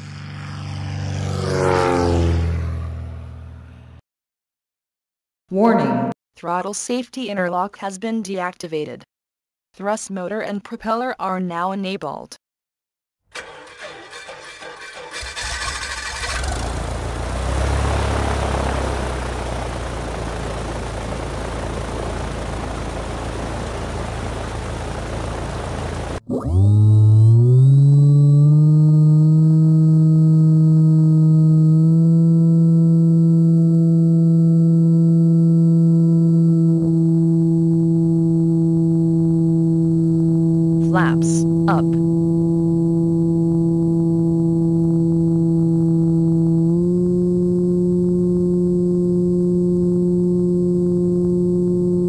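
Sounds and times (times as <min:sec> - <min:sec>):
propeller aircraft flying past: 0:00.0 - 0:04.0, 0:13.8 - 0:26.2, 0:28.0 - 0:52.0.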